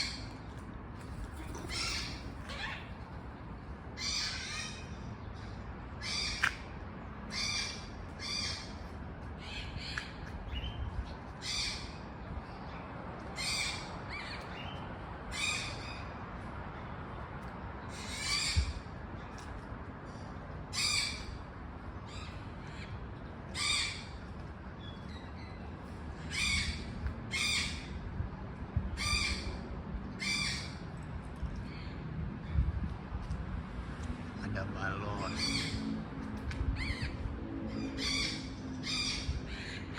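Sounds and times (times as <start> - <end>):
macaw squawking: 1.6 - 2.9, 35.2 - 35.8.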